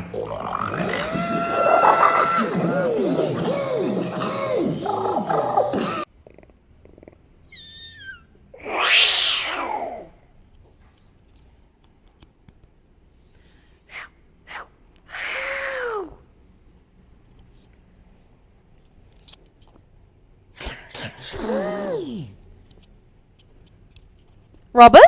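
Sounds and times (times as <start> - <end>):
breathy cat-like vocal cry: 7.9 - 10.2, 15.1 - 16.2, 21.2 - 22.4
falling vocal whistle: 8.6 - 10.1, 13.9 - 16.2.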